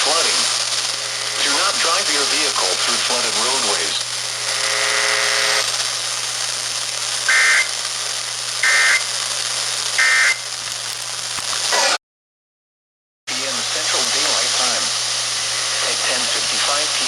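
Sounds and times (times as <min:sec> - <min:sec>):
radio hiss: 0:00.0 - 0:12.0, 0:13.3 - 0:17.0
electronic data bursts: 0:07.2 - 0:07.8, 0:08.6 - 0:09.2, 0:09.9 - 0:10.6
buzzy electronic tone: 0:08.6 - 0:09.1.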